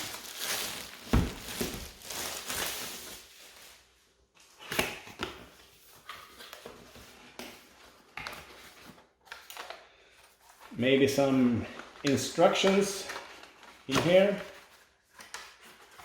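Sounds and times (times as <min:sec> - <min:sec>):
plastic packaging rustling: 0:00.0 - 0:04.0, 0:05.7 - 0:16.0.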